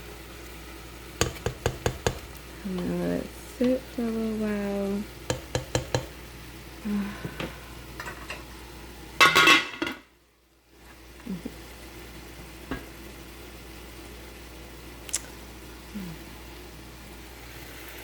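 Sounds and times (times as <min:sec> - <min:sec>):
pots and pans clattering: 0:05.3 - 0:06.2, 0:07.3 - 0:08.4, 0:09.2 - 0:10.1.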